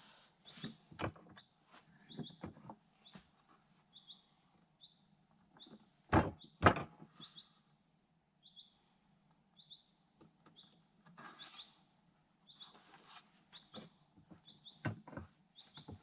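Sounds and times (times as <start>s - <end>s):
high bird chirps: 7.2s - 7.6s, 8.4s - 8.8s, 9.6s - 9.9s, 12.4s - 12.8s, 14.4s - 14.8s.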